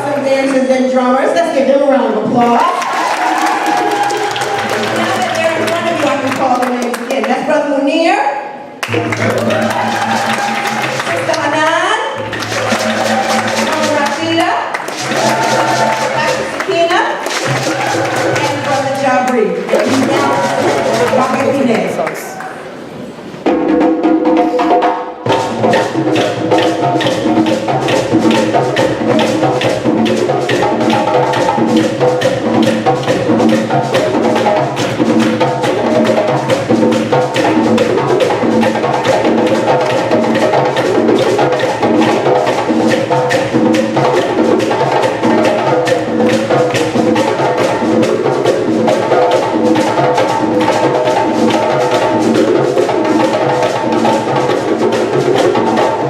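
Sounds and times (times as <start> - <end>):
drum ensemble playing: 2.2 - 7.6, 8.8 - 56.0
pitched wooden strikes: 8.8 - 21.7.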